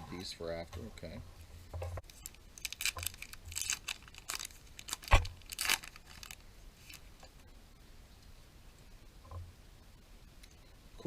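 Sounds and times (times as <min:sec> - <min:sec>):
wrapper tearing and crinkling: 0:02.0 - 0:07.1.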